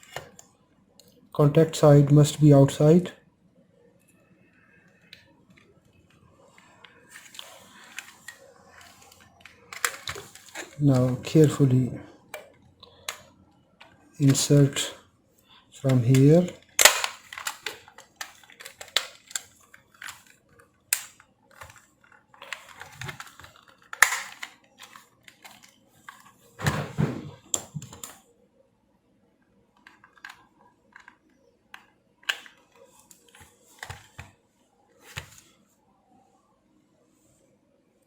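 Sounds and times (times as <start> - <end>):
plastic parts clicking and scraping: 0.0 - 0.4, 4.8 - 15.0, 15.6 - 28.2, 29.7 - 34.4, 35.0 - 35.5.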